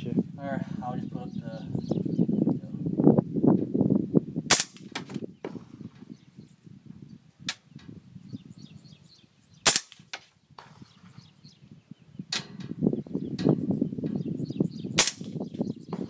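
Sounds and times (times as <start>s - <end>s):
suppressed rifle shots: 4.5s - 6.1s, 9.6s - 11.2s, 15.0s - 16.0s.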